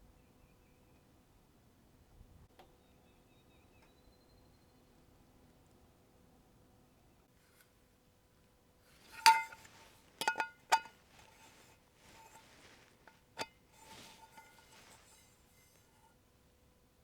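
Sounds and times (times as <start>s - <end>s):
soft handling rustle: 8.8s - 16.2s
metal objects clinking: 9.1s - 12.8s.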